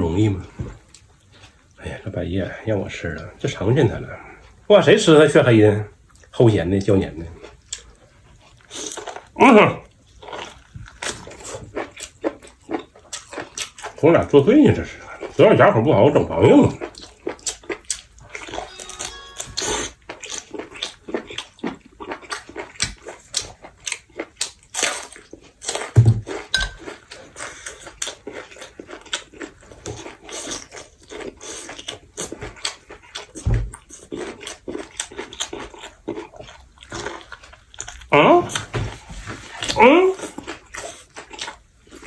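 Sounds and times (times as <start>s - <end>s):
chewing and crunching food: 0.0s - 42.0s.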